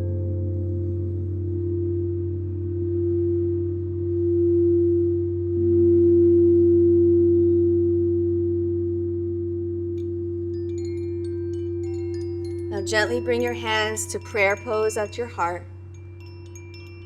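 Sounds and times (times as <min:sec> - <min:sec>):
singing bowls ringing: 0:09.9 - 0:17.0
high chime tinkles: 0:10.5 - 0:17.0.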